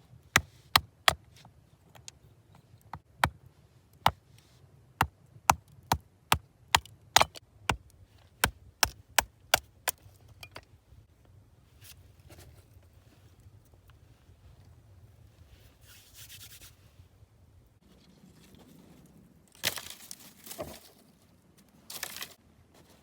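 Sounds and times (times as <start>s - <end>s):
tool chopping into wood: 8.8s - 10.0s.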